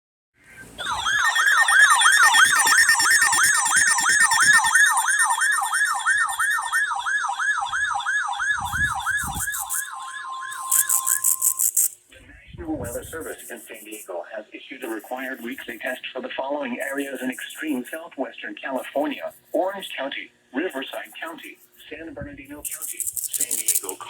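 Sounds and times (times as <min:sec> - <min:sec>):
electronic siren yelping: 0:00.5 - 0:12.0, 0:22.7 - 0:23.9
high-pitched buzzing: 0:00.5 - 0:14.1, 0:14.8 - 0:16.0, 0:16.8 - 0:18.1, 0:22.5 - 0:24.0
steady single tone: 0:08.6 - 0:12.0.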